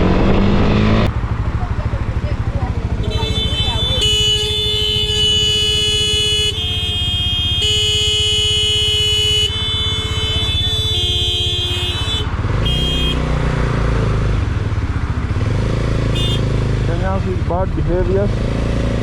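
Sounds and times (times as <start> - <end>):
motorcycle engine revving: 0.0 - 19.0
loud vehicle horn: 3.0 - 13.4, 16.1 - 16.6.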